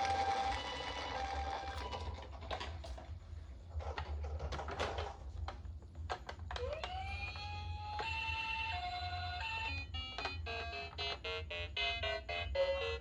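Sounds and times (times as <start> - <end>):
toy electronic siren: 0.0 - 2.1, 6.5 - 13.0.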